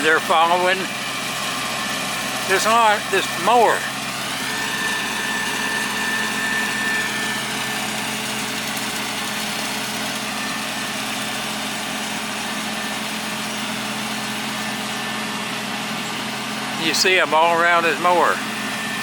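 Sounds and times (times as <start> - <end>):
engine humming: 0.0 - 19.0
faint high whine: 2.5 - 8.2.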